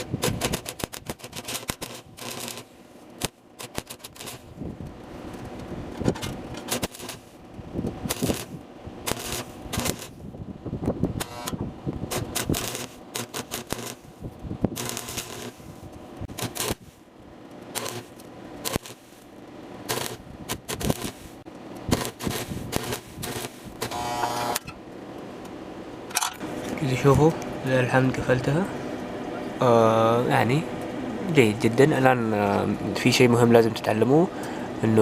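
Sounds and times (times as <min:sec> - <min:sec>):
welding arc crackling: 0:00.0 - 0:10.4, 0:11.1 - 0:25.0.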